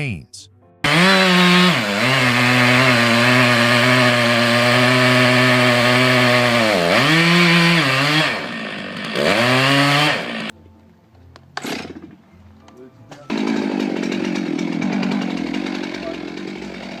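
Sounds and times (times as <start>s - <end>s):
chainsaw running at high revs: 0.8s - 10.5s, 13.3s - 17.0s.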